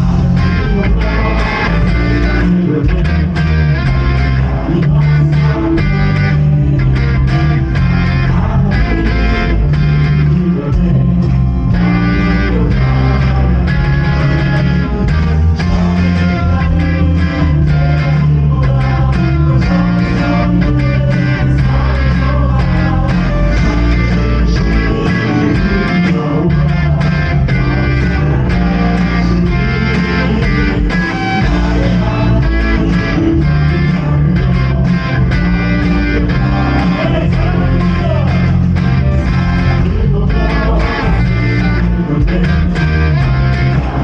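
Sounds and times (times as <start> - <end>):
bass guitar: 0.0 - 44.0
drums: 0.0 - 44.0
electric guitar: 0.0 - 44.0
person singing: 0.0 - 44.0.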